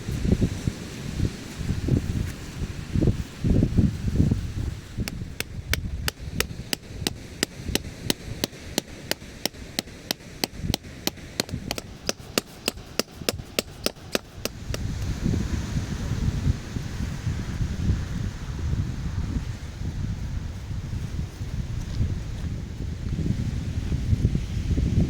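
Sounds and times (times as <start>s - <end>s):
wind buffeting microphone: 0.0s - 25.0s
sharp evenly spaced strikes: 6.4s - 14.6s.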